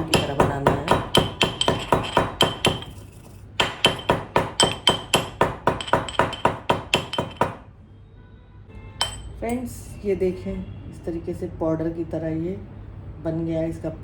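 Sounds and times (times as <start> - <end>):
pestle pounding in a mortar: 0.0 - 7.6.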